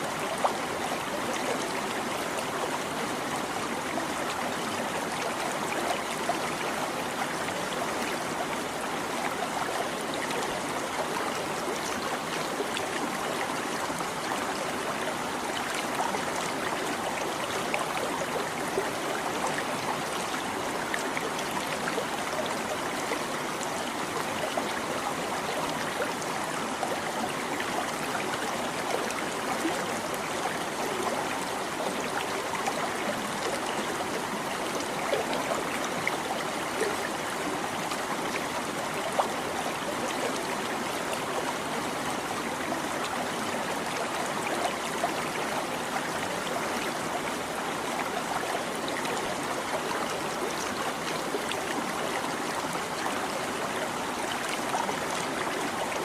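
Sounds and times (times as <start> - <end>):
stream babbling over stones: 0.0 - 56.0.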